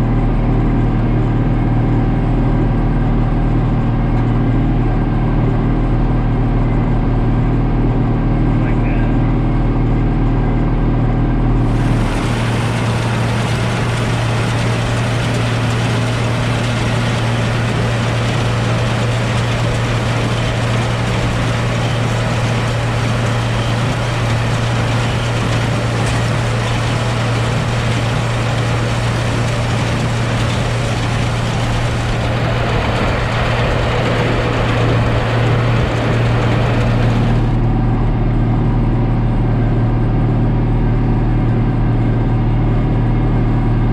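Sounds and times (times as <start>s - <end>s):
tractor diesel engine running: 0.0s - 43.9s
loud rushing noise: 11.6s - 37.8s.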